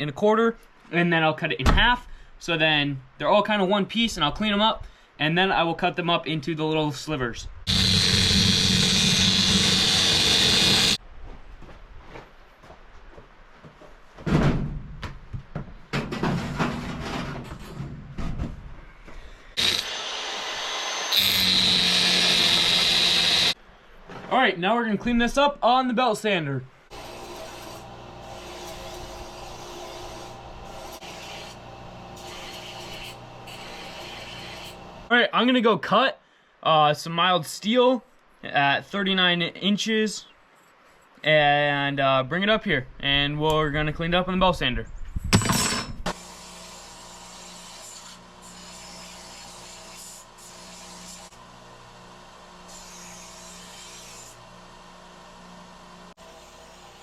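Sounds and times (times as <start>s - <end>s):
belt sander grinding steel: 7.7s - 11.0s, 19.6s - 23.6s, 26.9s - 35.1s.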